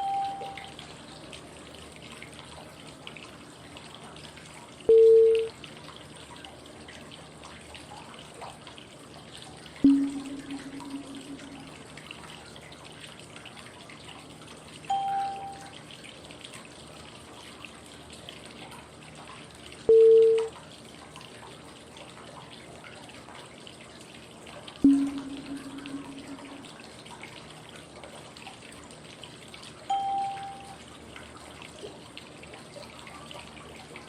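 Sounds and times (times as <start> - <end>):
low ringing tone: 0.0 - 0.8, 4.9 - 5.5, 9.8 - 12.0, 14.9 - 15.7, 19.9 - 20.5, 24.8 - 26.8, 29.9 - 30.8
soft cue tone: 0.0 - 0.8, 4.9 - 5.5, 9.8 - 12.0, 14.9 - 15.7, 19.9 - 20.5, 24.8 - 26.8, 29.9 - 30.8
flowing water white noise: 0.0 - 4.0, 9.8 - 13.0, 14.2 - 15.8, 24.8 - 26.9, 29.8 - 31.0.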